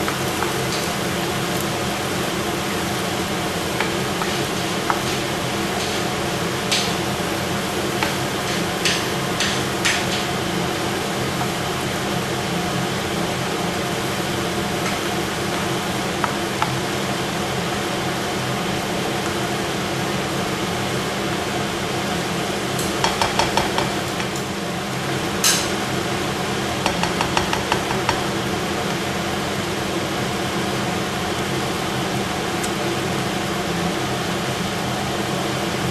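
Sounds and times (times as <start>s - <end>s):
food sizzling in a pan: 0.0s - 34.5s
utensil clicking against pan: 22.8s - 24.5s, 26.8s - 28.3s.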